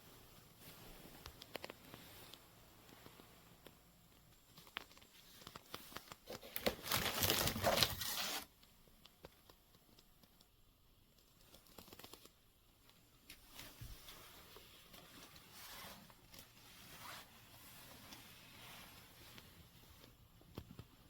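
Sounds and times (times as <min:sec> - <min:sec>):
crinkling tearing noise: 0:04.6 - 0:10.0, 0:11.2 - 0:12.4.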